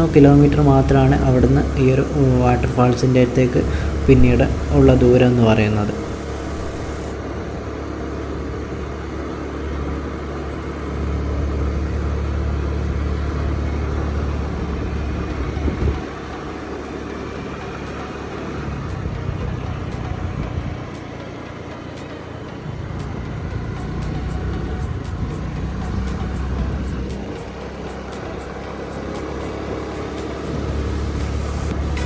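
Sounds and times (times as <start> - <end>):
motorcycle engine running: 0.0 - 32.0
road noise: 0.0 - 32.0
wind noise: 14.8 - 16.3.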